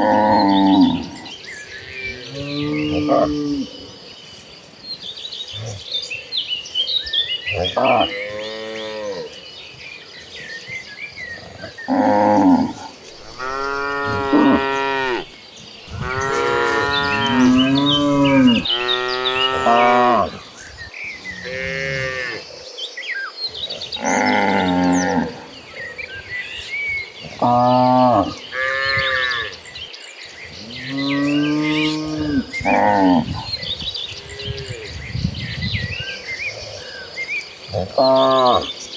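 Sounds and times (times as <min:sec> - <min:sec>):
cattle mooing: 0:11.9 - 0:20.4.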